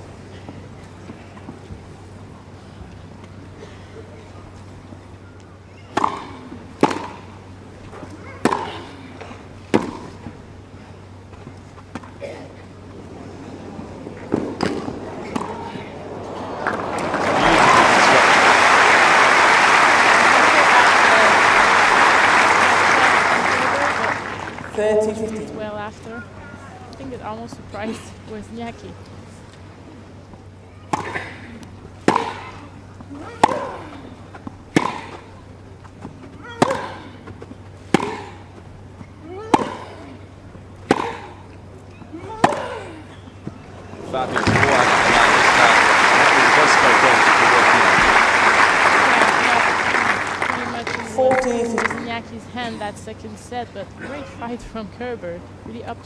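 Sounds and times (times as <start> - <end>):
steady low hum: 0.0 - 56.0
tennis rackets hitting ball: 5.8 - 7.3, 8.4 - 8.9, 9.7 - 10.2, 14.2 - 24.9, 30.9 - 32.5, 33.3 - 35.3, 36.5 - 38.4, 39.4 - 40.1, 40.8 - 41.4, 42.2 - 43.2
tennis racket hitting ball: 9.7 - 10.1, 14.3 - 17.5, 32.0 - 32.5, 34.7 - 35.2, 36.6 - 37.1, 37.9 - 38.3, 39.5 - 40.0, 40.8 - 41.3.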